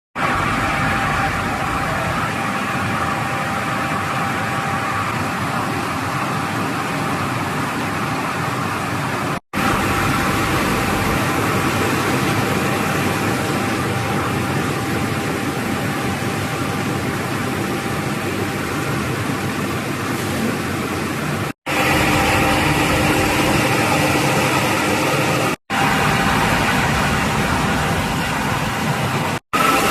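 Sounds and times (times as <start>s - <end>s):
glass washing machine running: 0.2s - 29.9s.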